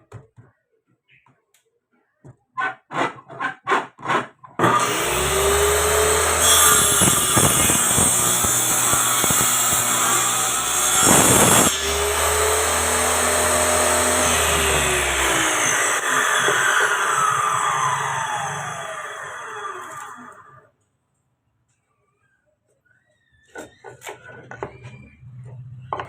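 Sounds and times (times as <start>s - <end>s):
saw blade cutting wood: 2.6s - 20.4s
table saw running: 4.6s - 20.6s.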